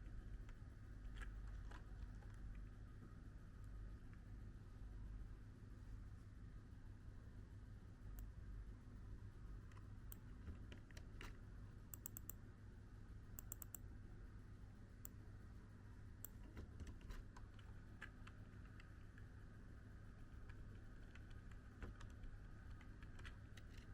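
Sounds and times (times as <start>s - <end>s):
low room hum: 0.0s - 23.9s
faint light clicks: 11.9s - 12.4s.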